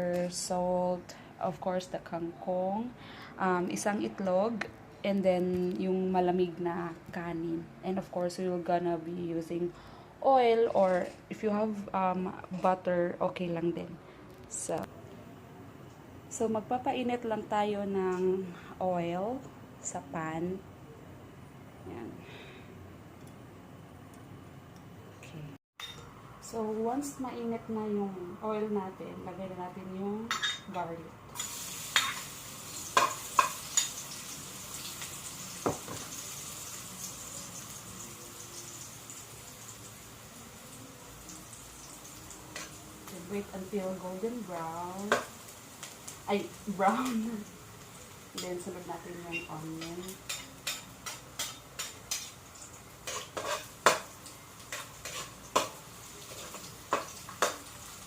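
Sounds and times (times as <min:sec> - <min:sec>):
garlic sizzling in oil: 0:31.4 - 0:58.0
spatula scraping frying pan: 0:53.0 - 0:54.0, 0:54.7 - 0:57.6.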